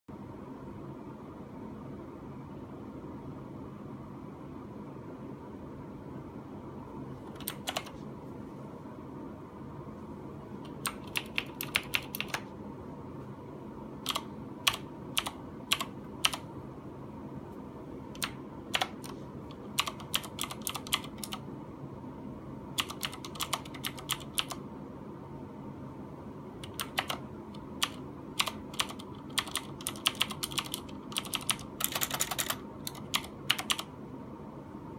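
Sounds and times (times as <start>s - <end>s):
keyboard key clicks: 7.3s - 8.0s, 14.0s - 16.4s.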